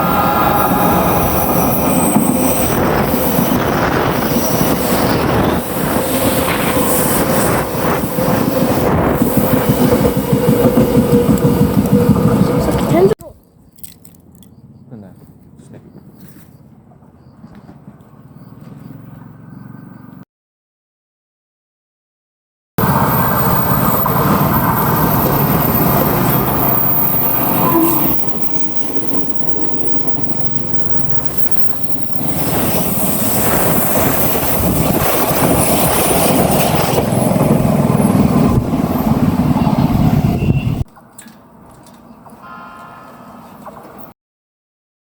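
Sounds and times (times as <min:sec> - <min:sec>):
wind on microphone: 0:00.0 - 0:13.1, 0:30.1 - 0:40.8
train rushing past: 0:00.0 - 0:13.2, 0:22.8 - 0:40.9.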